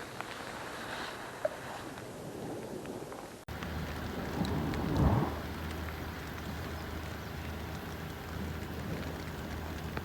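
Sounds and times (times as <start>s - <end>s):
wind rumbling on microphone: 0.0s - 10.0s.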